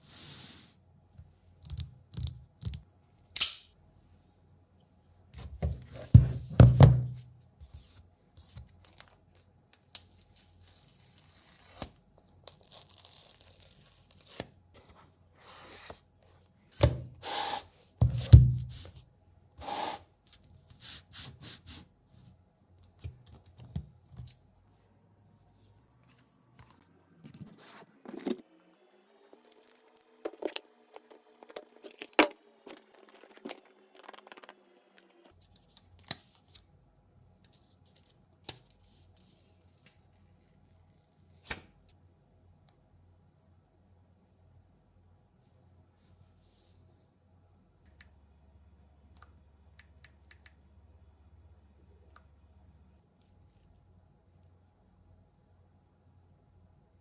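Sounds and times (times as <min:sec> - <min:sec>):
seal strips tearing: 0:10.7 - 0:14.5, 0:29.3 - 0:35.3.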